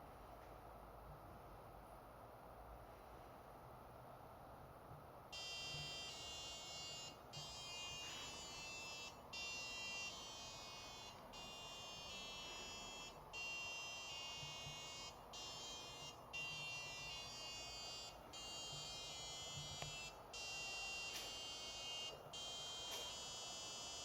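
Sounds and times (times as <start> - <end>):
buzzy electronic alarm tones: 5.4 - 24.0.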